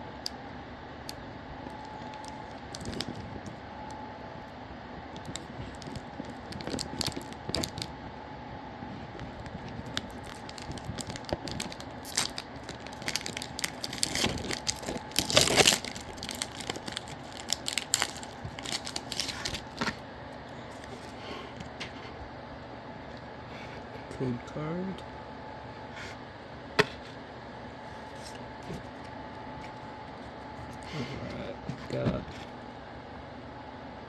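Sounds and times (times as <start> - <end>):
foil wrapper crinkling and tearing: 1.7 - 3.6, 5.2 - 8.0, 9.0 - 20.0.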